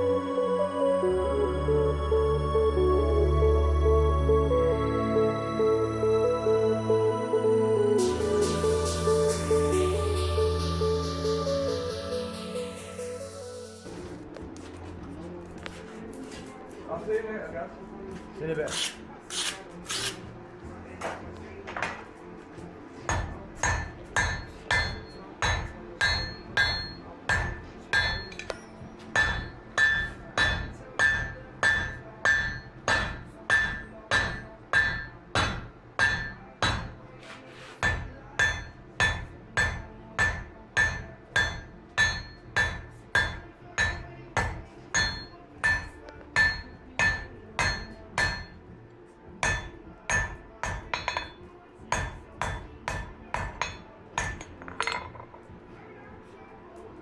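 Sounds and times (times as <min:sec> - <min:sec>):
hammer striking metal on anvil: 0:23.1 - 0:37.0, 0:37.8 - 0:48.6, 0:49.4 - 0:55.3.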